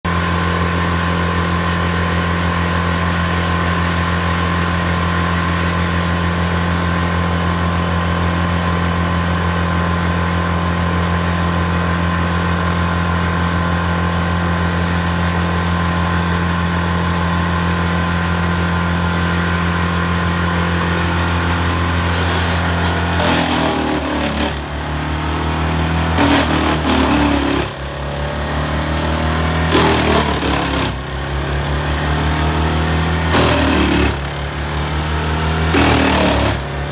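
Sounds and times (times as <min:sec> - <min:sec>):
chipper diesel engine running: 0:13.9 - 0:33.1
loud knocks and crackling: 0:20.5 - 0:24.7.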